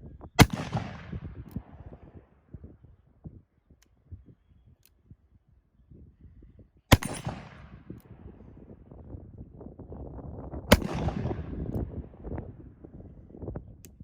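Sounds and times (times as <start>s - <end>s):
revolver gunshots: 0.4s - 1.8s, 6.9s - 8.0s, 10.7s - 11.7s.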